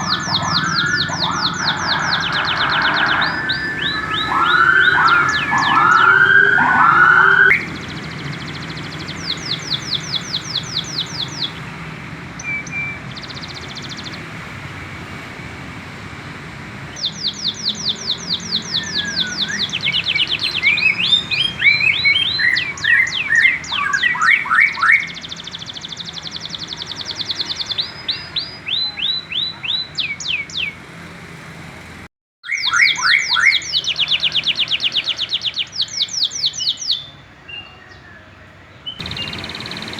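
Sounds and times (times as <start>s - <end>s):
low warbling sound: 0.0s - 7.7s
canary singing rapid trills: 0.0s - 14.6s, 16.9s - 30.8s, 32.4s - 38.0s, 38.9s - 39.9s.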